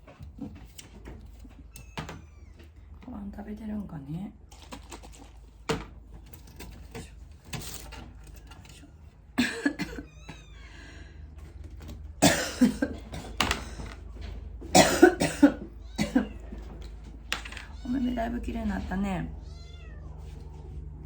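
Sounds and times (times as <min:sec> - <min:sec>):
short sharp coughs: 0:12.2 - 0:13.2, 0:14.7 - 0:16.3.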